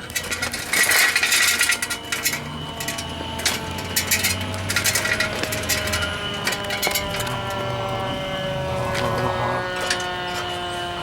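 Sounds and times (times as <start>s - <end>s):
small hard objects clinking: 0.0s - 8.0s.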